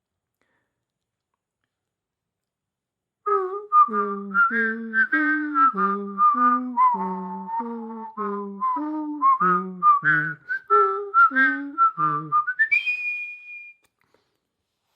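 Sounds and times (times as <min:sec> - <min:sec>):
person voicing a lower part: 0:03.2 - 0:12.7
person whistling a melody: 0:03.3 - 0:13.9.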